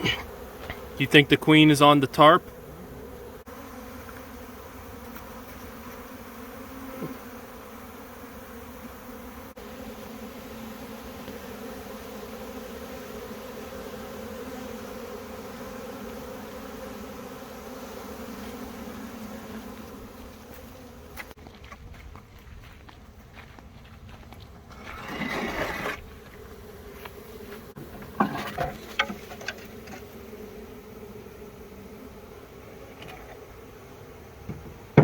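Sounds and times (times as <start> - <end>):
bees buzzing: 0.0 - 21.4, 24.6 - 35.0.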